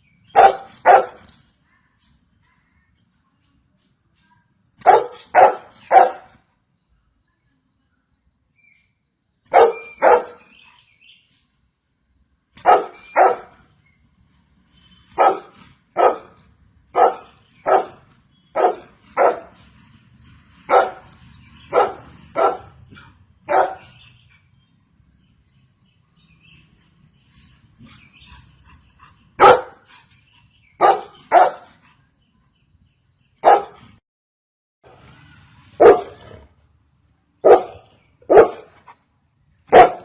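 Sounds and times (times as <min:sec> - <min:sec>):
dog barking: 0:00.3 - 0:01.2, 0:04.8 - 0:06.4, 0:09.5 - 0:10.6, 0:12.6 - 0:13.6, 0:15.2 - 0:19.6, 0:20.7 - 0:21.1, 0:21.7 - 0:24.0, 0:29.4 - 0:29.8, 0:30.8 - 0:31.7, 0:33.4 - 0:34.0, 0:35.8 - 0:36.4, 0:37.4 - 0:38.8, 0:39.7 - 0:40.0.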